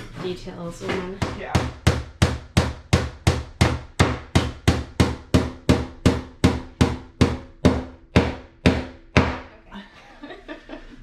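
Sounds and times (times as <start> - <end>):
hammer driving nail into wood: 1.6 - 9.4.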